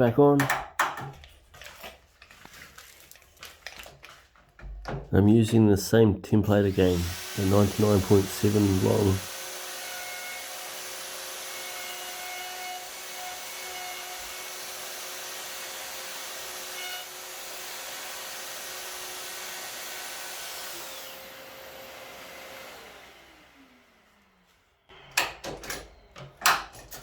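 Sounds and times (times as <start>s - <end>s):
dust extractor drawing air: 6.6s - 9.8s, 14.3s - 24.5s
router cutting wood: 6.6s - 24.4s.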